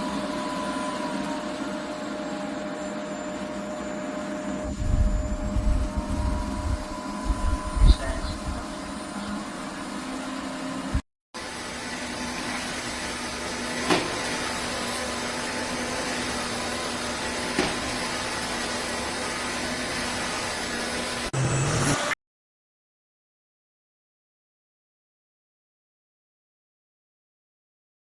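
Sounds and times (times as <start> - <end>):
vacuum mop motor hum: 0.0 - 22.1.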